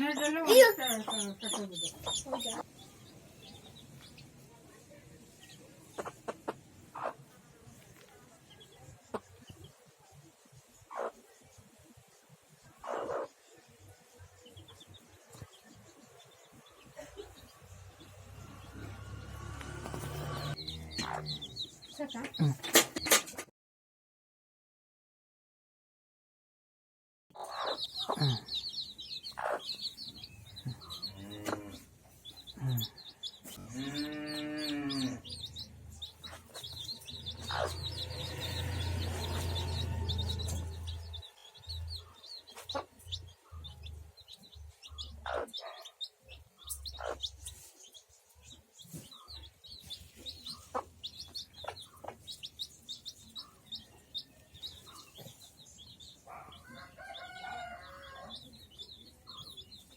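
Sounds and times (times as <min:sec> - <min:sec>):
hen clucking: 0:00.0 - 0:02.7, 0:05.9 - 0:07.3, 0:12.8 - 0:13.4, 0:19.8 - 0:23.2, 0:27.4 - 0:47.7, 0:48.8 - 0:59.9
chicks peeping: 0:00.0 - 0:23.3, 0:27.4 - 0:59.9.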